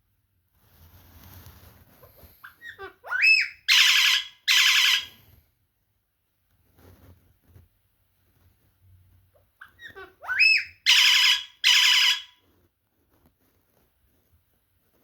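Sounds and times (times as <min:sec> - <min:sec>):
parrot chirping: 0:02.4 - 0:05.2, 0:09.6 - 0:12.4
parrot screeching: 0:02.5 - 0:05.2, 0:09.6 - 0:12.4
parrot whistle rising: 0:10.3 - 0:12.2.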